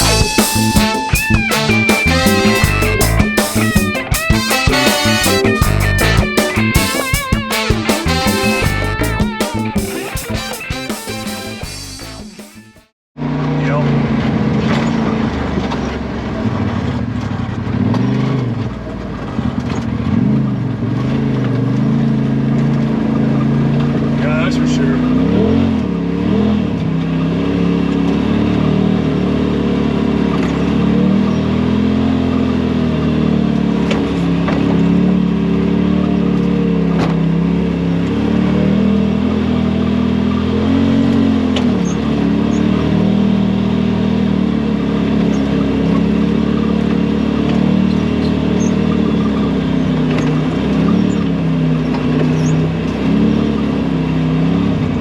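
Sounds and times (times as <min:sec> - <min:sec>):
utv engine running under load: 0:13.2 - 0:55.0.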